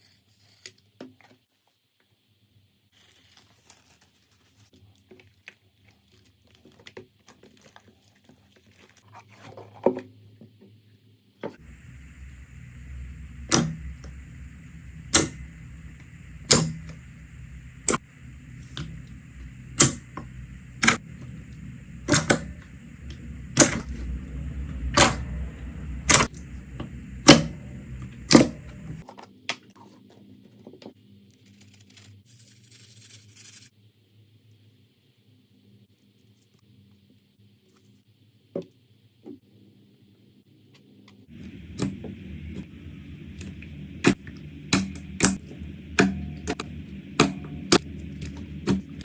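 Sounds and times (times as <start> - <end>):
faint handling sounds: 3.0 - 10.1
steady low hum: 11.6 - 29.0, 41.3 - 49.0.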